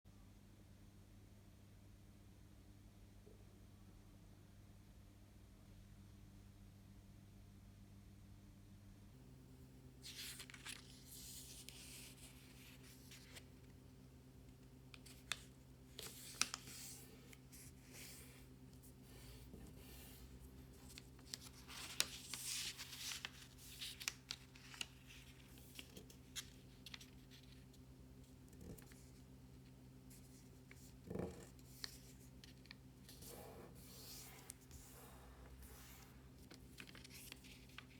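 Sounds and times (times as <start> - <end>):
paper rustling and creasing: 10.0 - 37.9.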